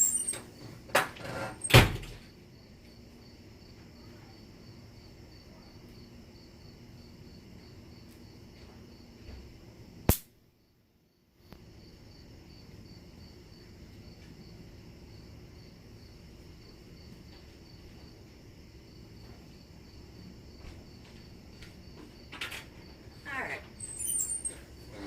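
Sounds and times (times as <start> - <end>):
crickets chirping: 0.0 - 25.0
sharp click: 10.1 - 10.3.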